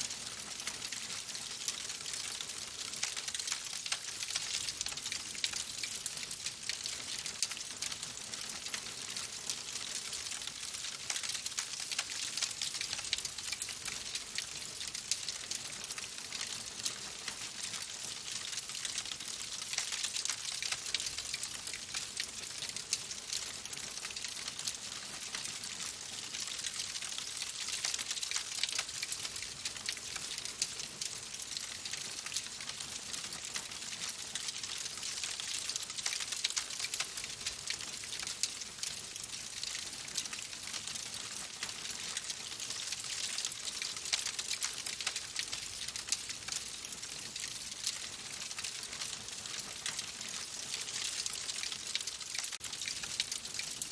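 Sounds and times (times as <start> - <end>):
wood fire crackling: 18.4 - 24.6, 26.1 - 30.7, 31.3 - 40.4, 43.1 - 50.0, 50.7 - 53.9.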